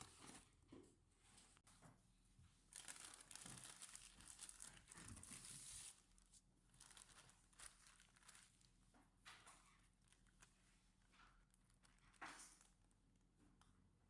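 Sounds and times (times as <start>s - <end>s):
packaging crinkling and tearing: 2.7s - 6.0s, 6.7s - 8.7s.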